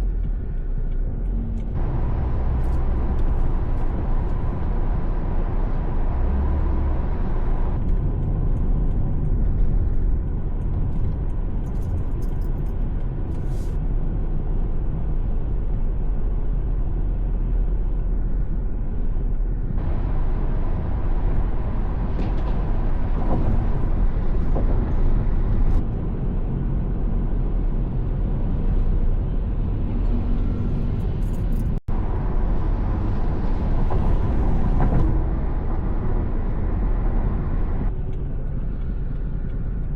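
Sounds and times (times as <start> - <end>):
car driving on road: 0.0 - 39.9.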